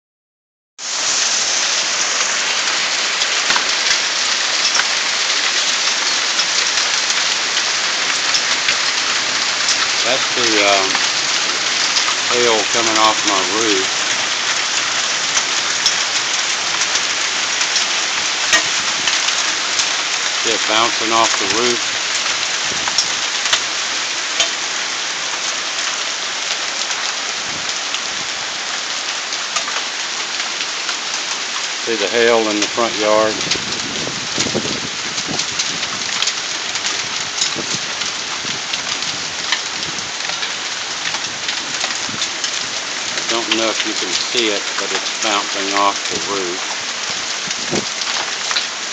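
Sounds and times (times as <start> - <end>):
hail pelting down: 0.8 - 48.9
hailstone ticks: 3.2 - 23.7, 24.4 - 24.6, 35.4 - 48.7.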